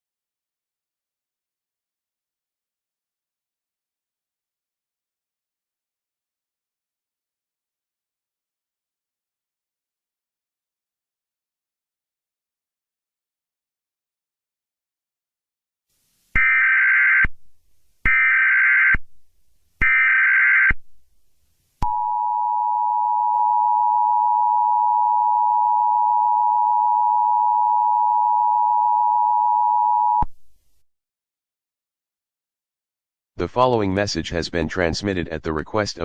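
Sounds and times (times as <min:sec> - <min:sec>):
short data bursts: 0:16.4 - 0:17.4, 0:19.8 - 0:20.8
two-tone attention signal: 0:21.8 - 0:30.3.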